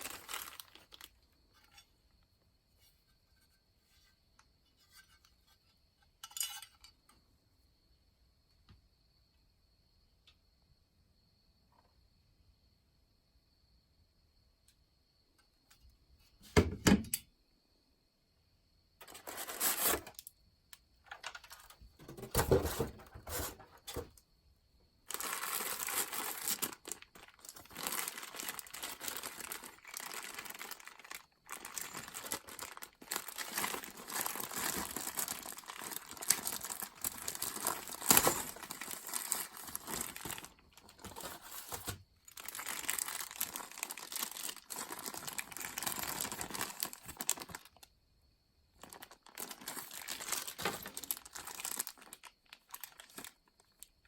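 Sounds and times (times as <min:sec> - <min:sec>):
packaging tearing: 0:00.0 - 0:01.1, 0:19.0 - 0:20.2, 0:25.1 - 0:47.8, 0:48.8 - 0:53.4
packaging crinkling and rustling: 0:00.0 - 0:01.8, 0:19.0 - 0:20.2, 0:25.1 - 0:47.9, 0:48.8 - 0:53.9.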